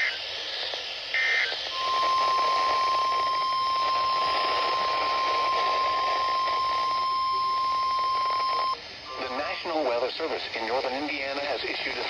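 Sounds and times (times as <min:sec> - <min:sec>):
radio static hiss: 0:00.0 - 0:12.0
steady high warning tone: 0:01.1 - 0:09.3.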